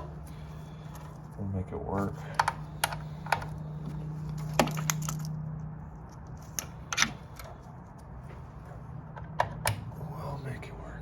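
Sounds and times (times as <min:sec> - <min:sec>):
steady low hum: 0:00.0 - 0:11.0
metal parts and tools clanking: 0:02.4 - 0:05.4.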